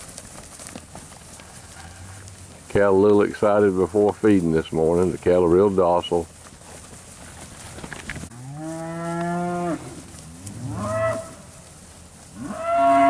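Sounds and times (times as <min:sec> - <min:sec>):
cattle mooing: 0:08.3 - 0:11.5, 0:12.3 - 0:13.0.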